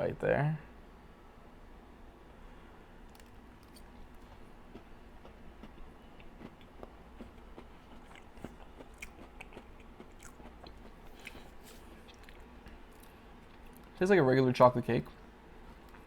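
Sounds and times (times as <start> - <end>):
person chewing cake: 3.1 - 14.0.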